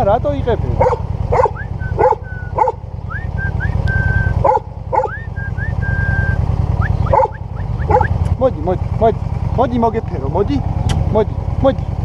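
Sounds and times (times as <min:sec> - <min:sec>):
steady low rumble: 0:00.0 - 0:12.0
dog barking: 0:00.8 - 0:02.8, 0:04.4 - 0:05.2, 0:07.0 - 0:08.2
dog whining: 0:00.8 - 0:08.2.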